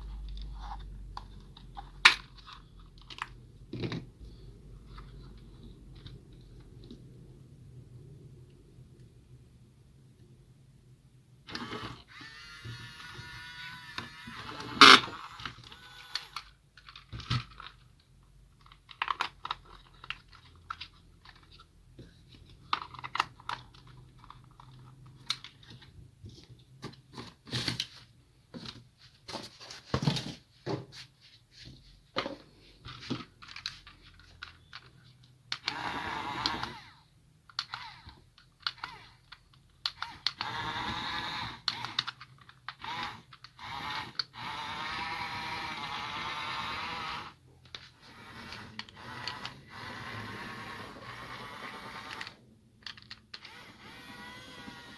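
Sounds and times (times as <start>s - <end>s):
small electric motors whirring: 11.5s - 16.5s, 35.6s - 37.0s, 37.7s - 39.2s, 40.0s - 42.2s, 42.8s - 47.4s, 48.0s - 52.4s, 53.3s - 54.9s
plastic and metal toy clicks: 37.5s - 45.9s.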